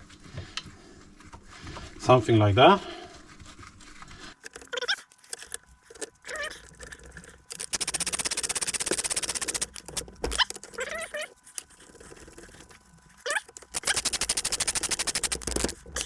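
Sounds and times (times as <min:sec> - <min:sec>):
ratchet clicking rapidly: 0:07.5 - 0:10.8, 0:13.4 - 0:15.8.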